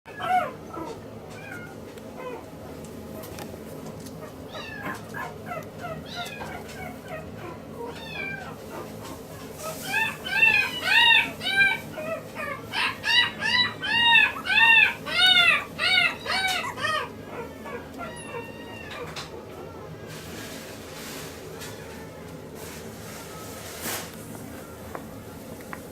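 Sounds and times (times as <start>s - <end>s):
puppy high-pitched cries: 0.1s - 2.4s, 4.2s - 19.3s
puppy whimpering: 0.1s - 3.3s, 4.0s - 19.8s.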